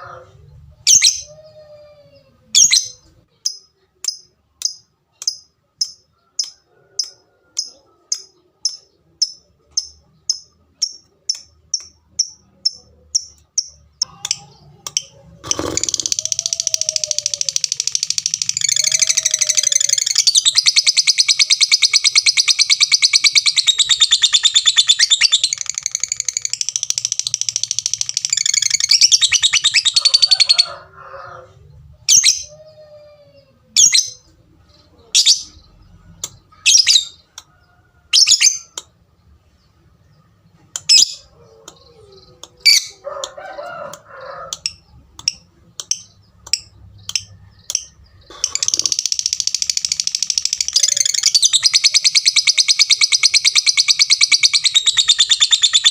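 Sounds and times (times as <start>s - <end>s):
sharp bird calls: 2.5s - 30.8s, 40.1s - 55.9s
lovebird chattering trill: 2.6s - 30.6s, 44.6s - 55.9s.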